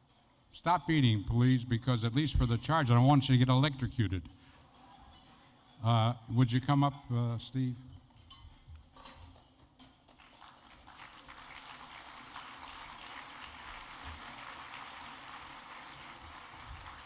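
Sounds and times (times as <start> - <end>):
audience applauding: 10.2 - 17.0.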